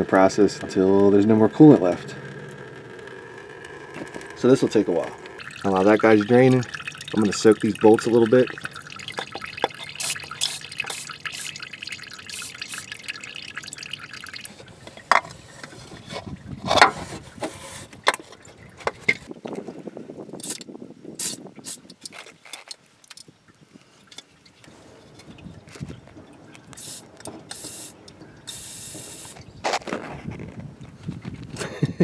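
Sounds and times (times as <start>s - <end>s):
coolant trickling into a bucket: 0.0s - 16.5s, 26.7s - 29.4s
liquid dripping: 1.0s - 14.7s.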